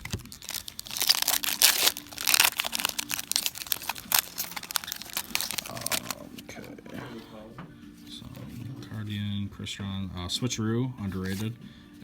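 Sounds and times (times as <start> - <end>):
foil wrapper crinkling: 0.0 - 6.6.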